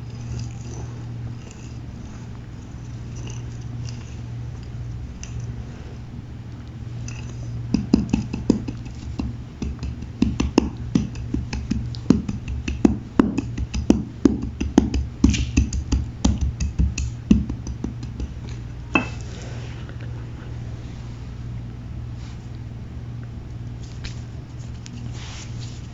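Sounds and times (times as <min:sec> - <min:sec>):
low hum: 0:00.0 - 0:25.9.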